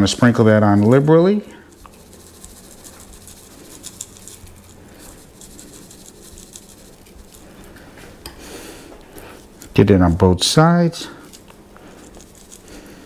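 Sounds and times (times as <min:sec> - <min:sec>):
seasoning granules pattering: 0:00.0 - 0:07.9, 0:11.0 - 0:13.0.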